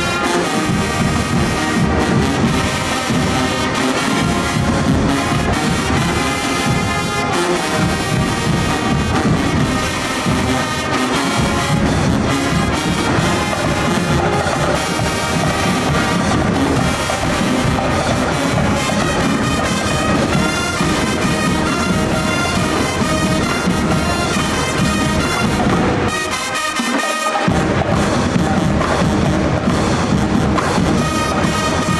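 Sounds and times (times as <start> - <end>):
brass section playing tune: 0.0 - 31.9
marching percussion: 0.0 - 31.9.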